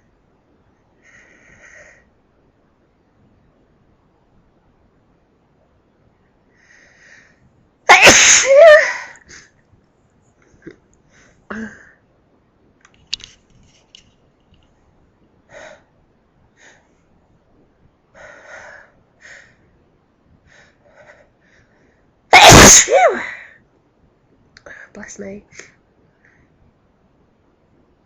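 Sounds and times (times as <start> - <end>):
person sneezing: 7.9 - 9.2, 22.4 - 23.4.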